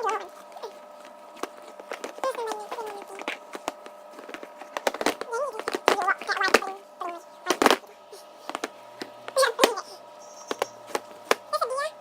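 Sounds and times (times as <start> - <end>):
high-pitched voices: 0.0 - 0.8, 2.2 - 3.4, 5.2 - 8.4, 9.3 - 12.0.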